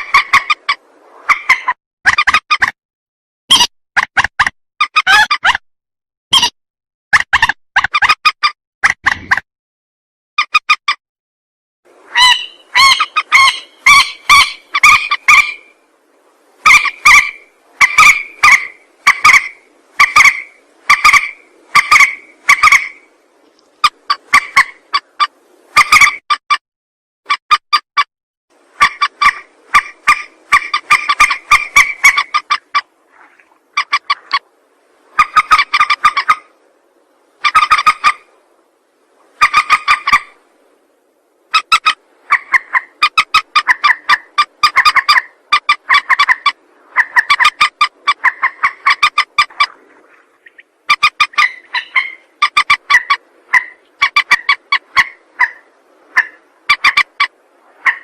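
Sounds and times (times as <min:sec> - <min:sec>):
recorded bird call: 0:12.1 - 0:15.9, 0:16.6 - 0:26.3, 0:28.8 - 0:32.9, 0:35.1 - 0:36.6, 0:37.3 - 0:38.4, 0:39.2 - 0:40.4, 0:41.5 - 0:58.0.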